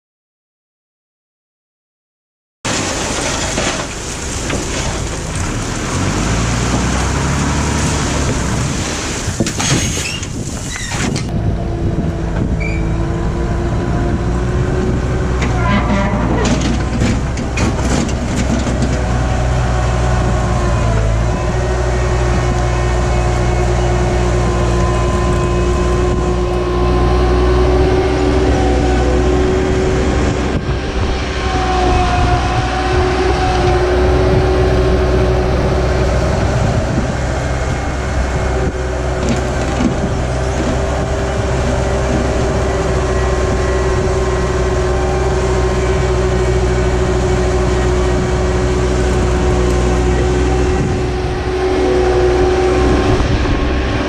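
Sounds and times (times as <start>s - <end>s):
skid steer engine running hard: 2.7s - 54.0s
hydraulic whine: 15.2s - 54.0s.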